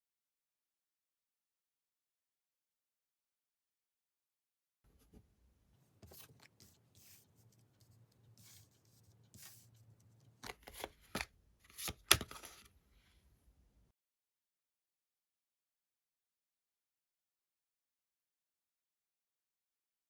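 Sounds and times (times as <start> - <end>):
cards rustling and sliding: 6.0 - 7.4, 8.2 - 12.7
card snaps and slaps: 10.4 - 12.7.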